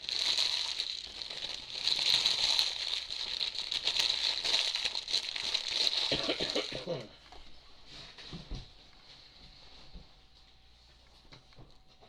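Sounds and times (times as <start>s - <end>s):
plastic wrap crinkling and tearing: 0.0s - 7.0s.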